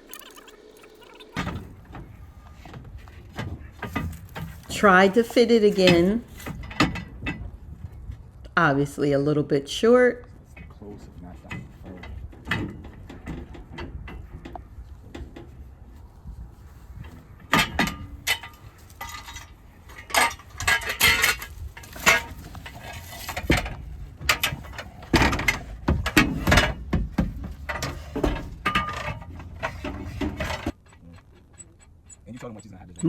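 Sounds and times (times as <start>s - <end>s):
metal brackets clanking and rattling: 3.1s - 7.5s, 17.0s - 32.7s.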